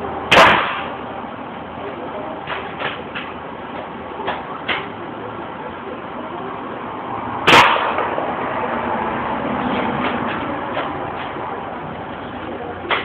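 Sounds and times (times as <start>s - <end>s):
spring rifle shot: 0.3s - 0.9s.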